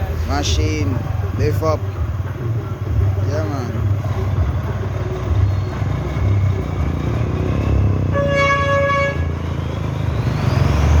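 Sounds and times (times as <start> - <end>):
truck engine rumbling: 0.0 - 11.0
truck horn blast: 7.9 - 9.6.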